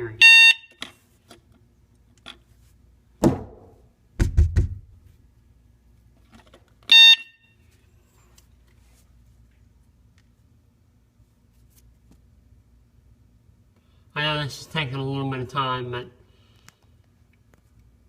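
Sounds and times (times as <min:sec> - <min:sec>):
shrill electronic alarm beep: 0:00.2 - 0:00.8, 0:06.9 - 0:07.5
door thump and knocks: 0:03.2 - 0:04.9.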